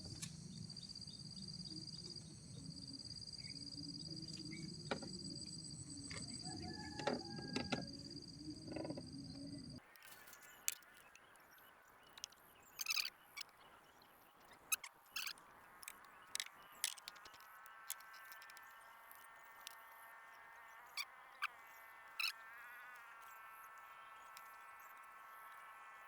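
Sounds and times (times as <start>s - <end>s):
high-pitched animal chorus: 12.2s - 13.7s, 14.4s - 19.8s, 20.9s - 25.2s.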